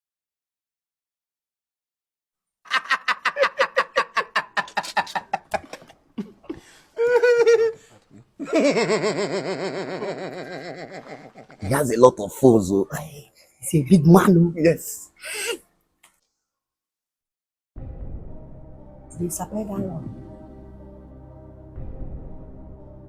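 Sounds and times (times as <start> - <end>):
person laughing: 2.7 - 12.0.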